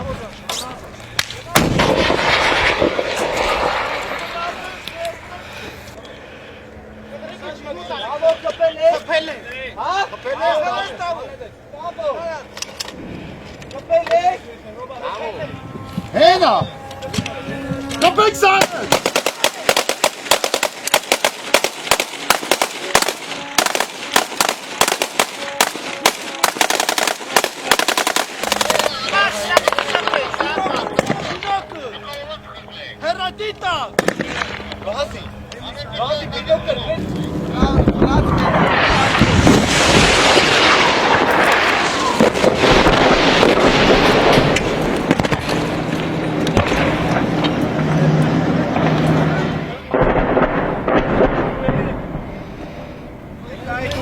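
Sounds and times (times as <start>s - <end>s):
rockets launching: 0.0s - 5.8s, 16.1s - 31.7s, 34.0s - 53.0s
rapid gunfire: 18.6s - 29.0s.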